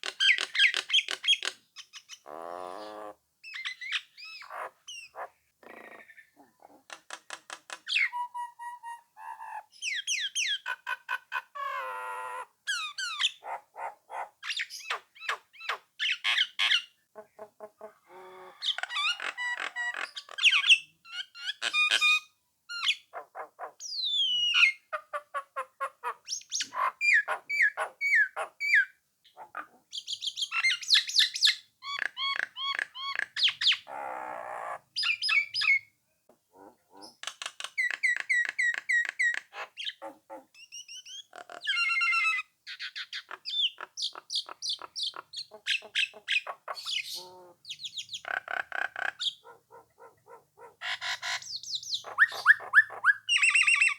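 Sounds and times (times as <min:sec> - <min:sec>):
myna whistling and chattering: 0:51.2 - 0:53.9.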